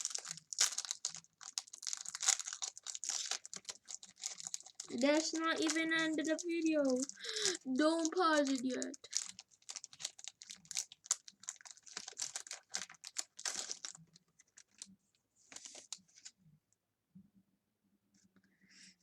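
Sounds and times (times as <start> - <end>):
foil wrapper crinkling: 0.0 - 14.9.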